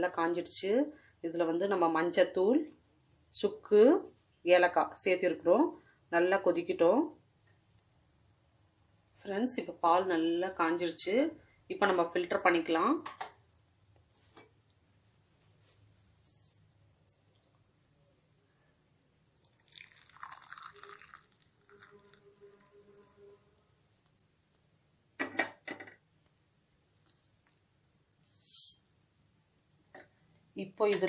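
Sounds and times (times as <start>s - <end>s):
high-pitched insect trill: 0.0s - 31.0s
liquid pouring: 19.4s - 22.3s.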